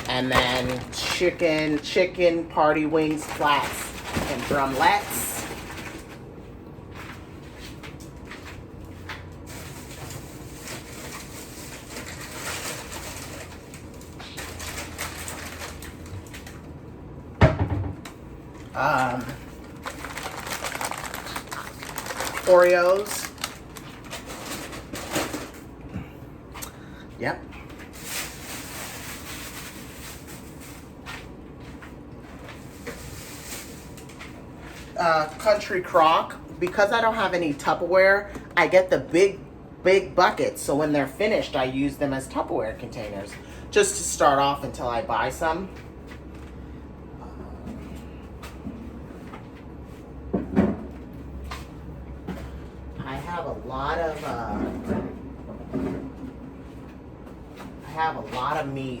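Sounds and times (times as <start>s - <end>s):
packaging rustling: 0.0s - 2.1s, 3.0s - 6.2s, 9.4s - 16.6s, 18.9s - 25.6s
plastic crinkling: 0.0s - 6.2s, 9.3s - 16.7s, 18.8s - 25.6s, 27.7s - 31.0s, 32.4s - 35.7s
low steady hum: 0.0s - 59.0s.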